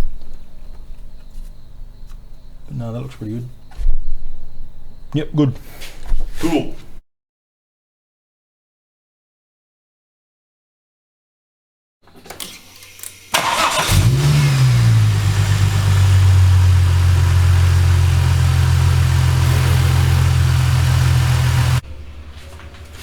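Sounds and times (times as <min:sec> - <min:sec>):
car engine starting and idling: 0:12.4 - 0:23.0.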